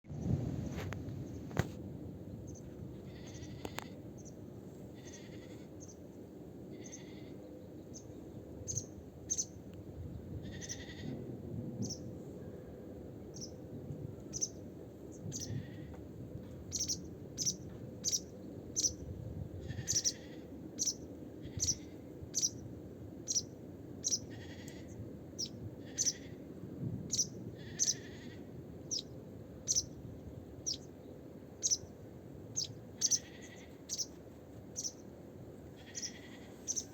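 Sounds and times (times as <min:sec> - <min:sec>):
low background noise: 0:00.1 - 0:36.9
short high animal calls: 0:05.0 - 0:05.8, 0:06.7 - 0:07.4, 0:10.4 - 0:11.2, 0:19.6 - 0:22.5, 0:24.0 - 0:26.4, 0:27.1 - 0:29.0, 0:32.6 - 0:34.1, 0:35.8 - 0:36.9.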